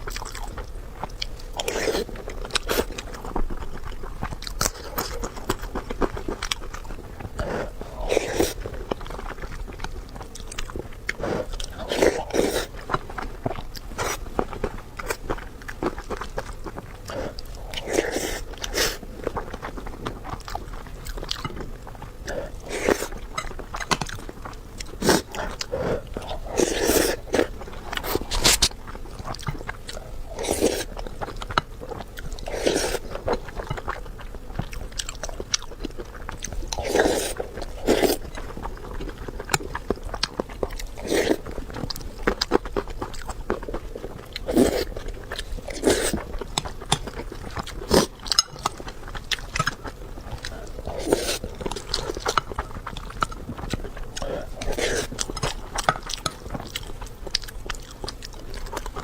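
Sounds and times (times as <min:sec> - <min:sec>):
person chewing food: 0:00.0 - 0:59.0.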